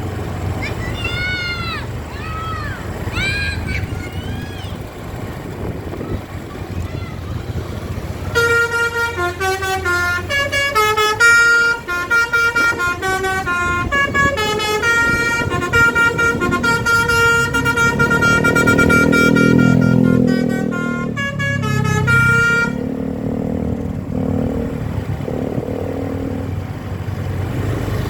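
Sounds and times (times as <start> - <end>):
low rumbling: 0.0 - 28.0
musical bus horn tune: 8.2 - 23.0.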